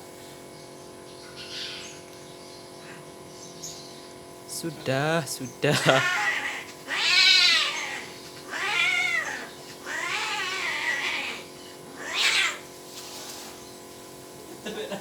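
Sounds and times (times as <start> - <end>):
cats yowling: 5.5 - 12.7.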